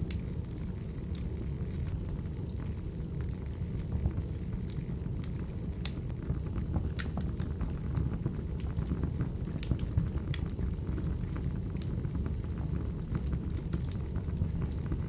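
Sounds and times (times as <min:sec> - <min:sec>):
wood fire crackling: 0:00.0 - 0:15.0
sharp snaps and pops: 0:05.2 - 0:06.2, 0:09.5 - 0:10.6, 0:13.7 - 0:14.8.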